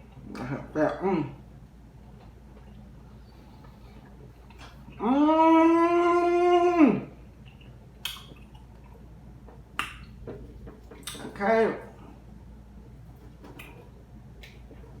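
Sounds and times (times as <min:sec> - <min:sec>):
long held voice sound: 0:05.0 - 0:07.2.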